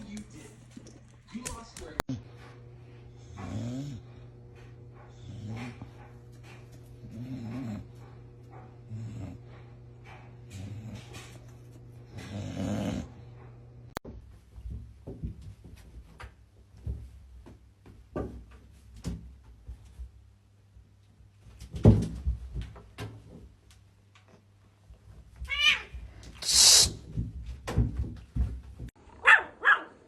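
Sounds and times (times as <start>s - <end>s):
cat meowing: 25.5s - 26.9s
short hissing burst: 26.4s - 27.0s.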